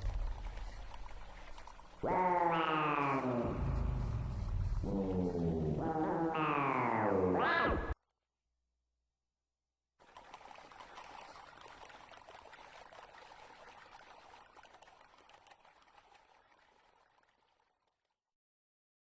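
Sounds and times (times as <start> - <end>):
crackling rushing hiss: 2.8 - 5.8.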